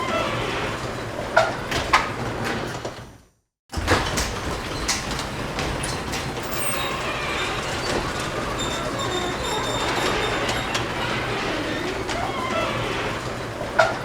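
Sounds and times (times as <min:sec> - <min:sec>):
garage door rumbling: 0:03.7 - 0:14.0
high squeaks: 0:05.8 - 0:13.5.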